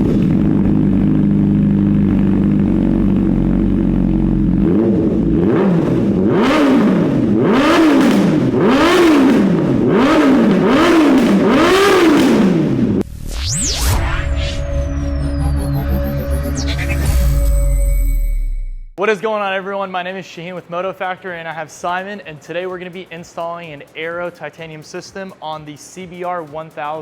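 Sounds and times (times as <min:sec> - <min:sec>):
motorcycle engine revving: 0:00.0 - 0:13.1
rising whoosh: 0:13.0 - 0:18.8.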